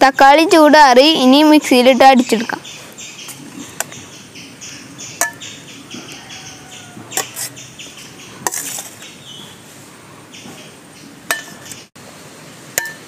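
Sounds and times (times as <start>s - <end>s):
small birds chirping: 0.9s - 11.9s.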